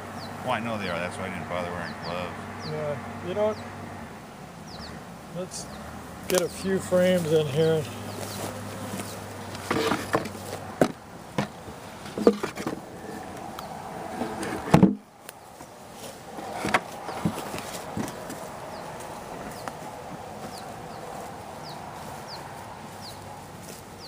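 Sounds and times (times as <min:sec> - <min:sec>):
honeybees buzzing: 0:00.0 - 0:24.0
wooden frames knocking: 0:09.0 - 0:12.9, 0:14.2 - 0:15.0, 0:16.5 - 0:18.4.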